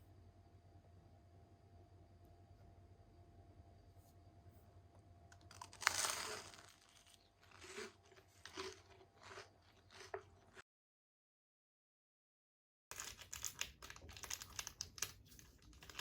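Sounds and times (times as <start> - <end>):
chewing crunches: 5.3 - 10.6
bite into flaky pastry: 5.4 - 10.6.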